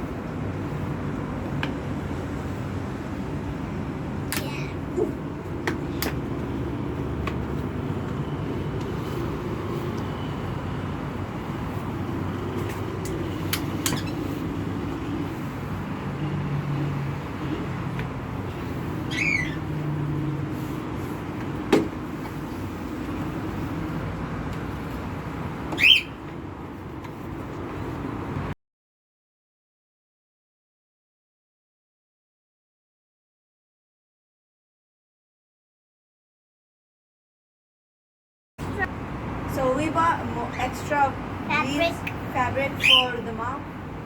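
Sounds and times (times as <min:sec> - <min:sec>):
low hum of traffic: 0:00.0 - 0:28.6, 0:38.6 - 0:44.0
squawking bird calls: 0:13.8 - 0:14.4, 0:18.9 - 0:19.8, 0:25.8 - 0:26.2, 0:42.8 - 0:43.4.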